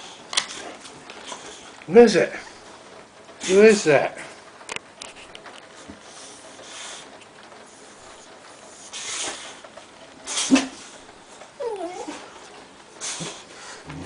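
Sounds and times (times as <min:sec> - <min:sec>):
dog whining: 0:11.5 - 0:14.0.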